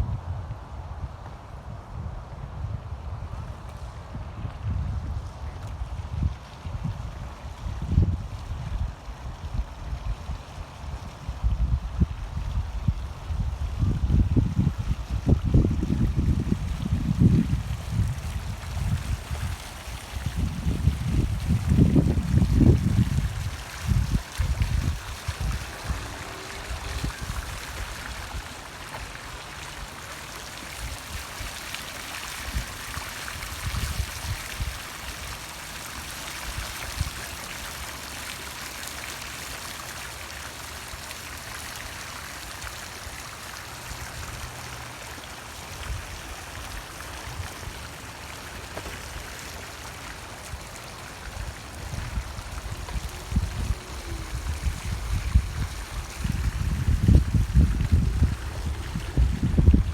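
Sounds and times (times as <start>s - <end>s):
wind buffeting microphone: 0.0s - 35.4s, 51.2s - 59.9s
water splashing and trickling: 3.5s - 59.9s.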